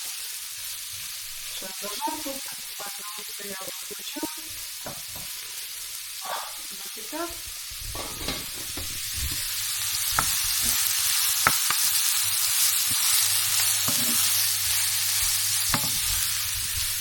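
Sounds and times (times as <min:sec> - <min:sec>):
vegetables sizzling in oil: 0:00.0 - 0:17.0
utensil clicking against pan: 0:11.5 - 0:11.9.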